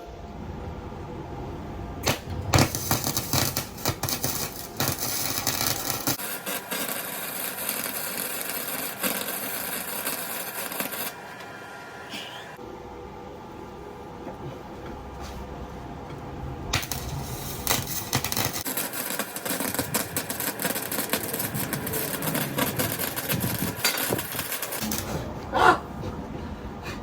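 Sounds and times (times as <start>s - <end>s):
welder crackling: 2.0s - 11.7s, 16.7s - 25.6s.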